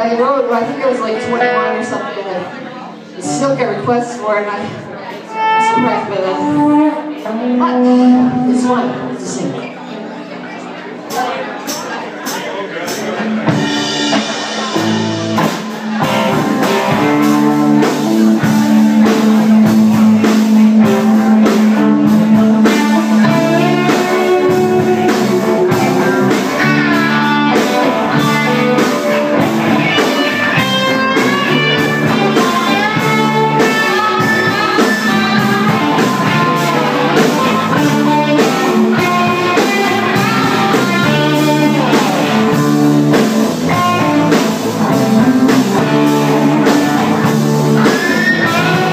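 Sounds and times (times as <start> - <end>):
live band playing: 0.0 - 10.4, 11.0 - 48.9
guitar: 0.0 - 48.9
drum kit: 11.1 - 48.9.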